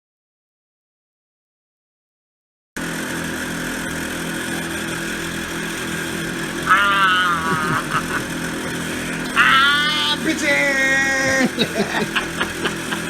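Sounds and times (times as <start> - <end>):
steady mechanical drone: 2.8 - 13.0
wavering high-pitched cry: 6.6 - 13.0.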